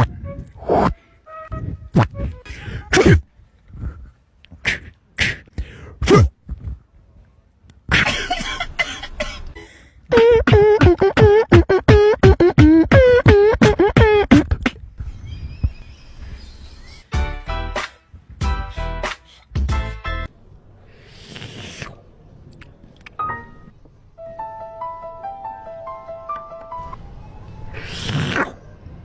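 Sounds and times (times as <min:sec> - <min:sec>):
mouth-made percussive pops: 0:10.1 - 0:14.8.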